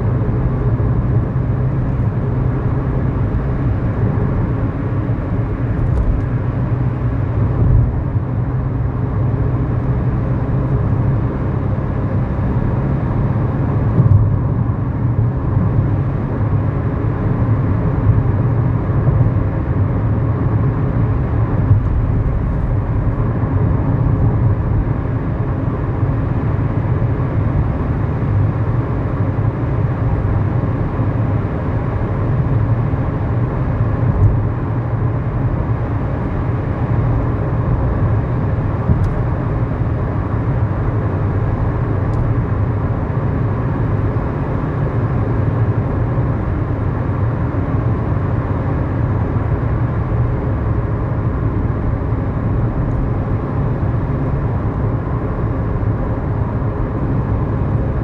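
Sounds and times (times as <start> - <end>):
tyre and road noise: 0.0 - 26.8
car engine drone in cabin: 0.0 - 58.0.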